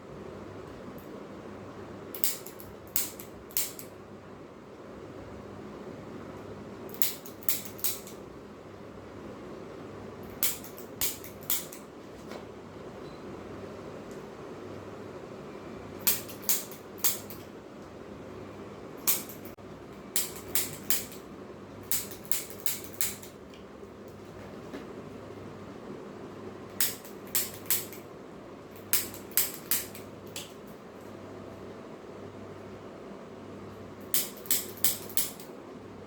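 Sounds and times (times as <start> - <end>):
fan humming: 0.0 - 36.0
sharp clicks of chiropractic cracks: 2.2 - 3.9, 6.9 - 8.2, 10.3 - 11.9, 16.0 - 17.5, 19.0 - 19.6, 20.2 - 21.3, 21.9 - 24.2, 26.7 - 28.0, 28.8 - 30.7, 34.1 - 35.6.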